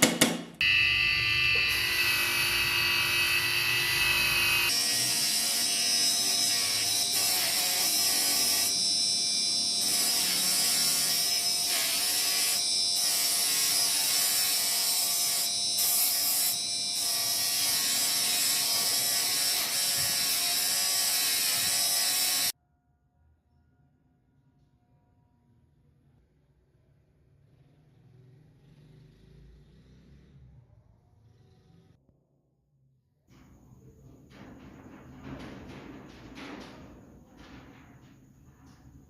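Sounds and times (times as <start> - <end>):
power tool whining: 0.6 - 22.5.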